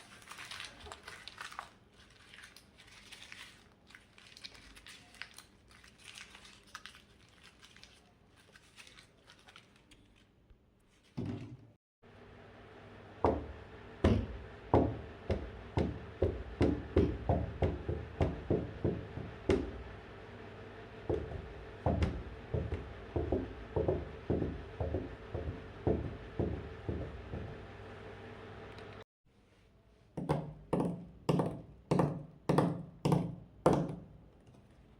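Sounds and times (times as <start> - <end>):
faint crinkling: 0.0 - 11.2
dull thumps: 13.2 - 19.9, 21.0 - 27.8.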